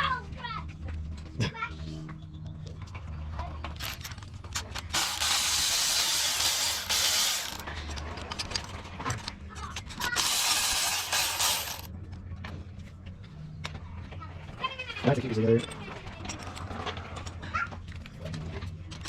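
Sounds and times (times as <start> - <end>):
ratchet wrench clicking: 4.6 - 7.6, 10.1 - 11.9.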